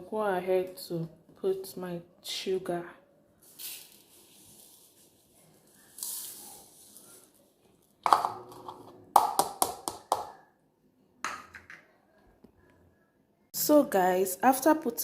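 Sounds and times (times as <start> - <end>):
sugar pouring into a bowl: 3.4 - 7.4.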